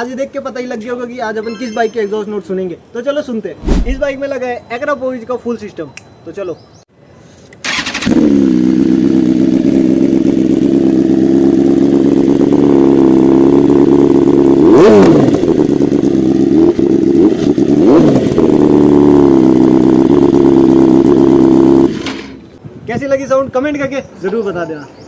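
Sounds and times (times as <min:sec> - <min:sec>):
motorcycle engine idling: 0:08.1 - 0:14.6.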